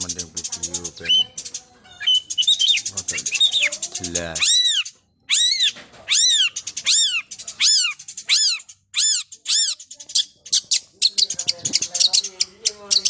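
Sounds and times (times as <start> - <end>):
bird giving mewing calls: 4.4 - 9.8.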